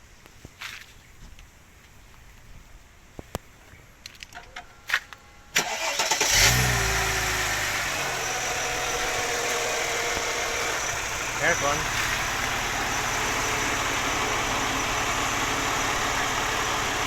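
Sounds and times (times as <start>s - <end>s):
car engine starting and idling: 5.5s - 17.0s.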